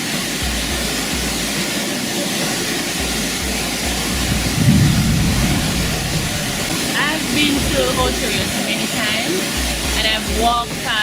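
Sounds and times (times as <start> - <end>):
waterfall rushing: 0.0 - 11.0
thumps on microphone: 3.8 - 6.7.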